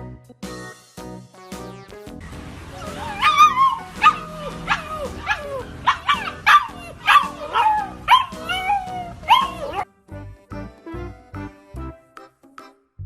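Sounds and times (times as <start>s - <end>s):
dog yipping and whining: 2.8s - 9.8s.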